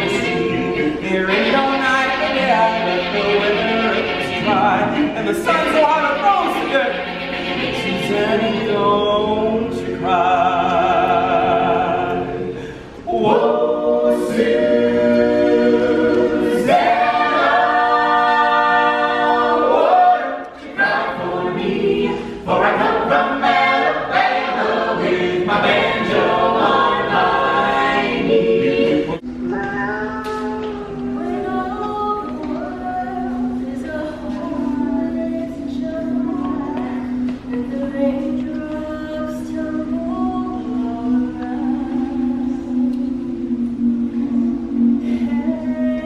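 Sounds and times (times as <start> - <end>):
a cappella choir singing: 0.0 - 46.0.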